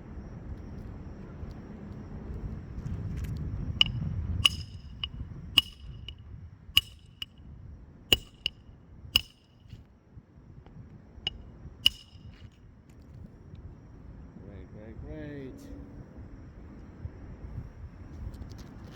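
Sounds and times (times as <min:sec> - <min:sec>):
hammer striking roofing nails: 0:03.8 - 0:06.2, 0:06.8 - 0:07.3, 0:08.1 - 0:08.6, 0:09.2 - 0:09.7, 0:11.9 - 0:12.5.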